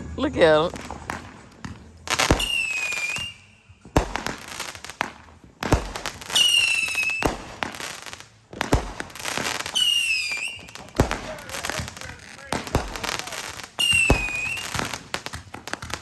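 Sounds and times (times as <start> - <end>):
fireworks bangs: 0.0 - 16.0
firework whistle: 2.2 - 4.5, 5.7 - 7.7, 9.4 - 15.1.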